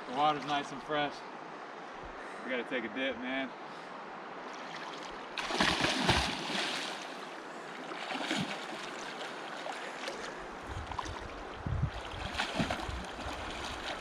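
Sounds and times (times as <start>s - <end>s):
river running: 0.0s - 14.0s
person splashing into water: 5.4s - 7.2s, 7.9s - 10.2s, 12.0s - 14.0s.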